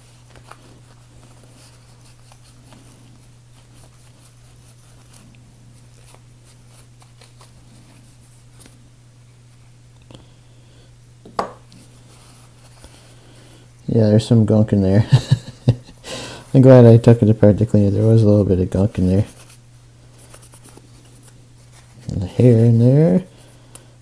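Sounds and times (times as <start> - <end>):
steady low hum: 0.0 - 24.0
soft rubbing: 16.5 - 23.6.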